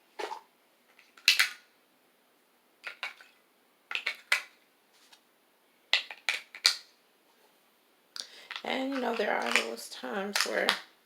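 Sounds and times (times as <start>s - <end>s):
small hard objects clicking: 1.0s - 1.6s, 2.8s - 3.3s, 3.9s - 4.6s, 5.9s - 6.9s.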